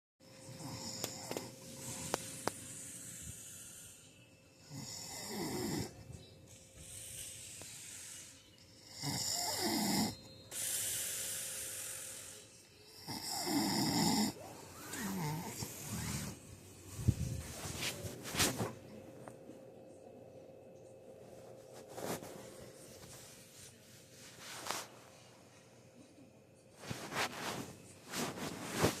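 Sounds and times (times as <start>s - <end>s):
breathy hissing breaths: 0.3s - 18.7s
person snoring: 0.5s - 2.2s, 2.8s - 6.0s, 8.8s - 10.2s, 13.0s - 16.4s.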